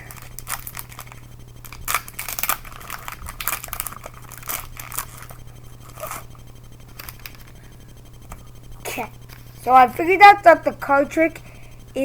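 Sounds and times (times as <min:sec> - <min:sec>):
foil wrapper crinkling: 0:00.0 - 0:07.6.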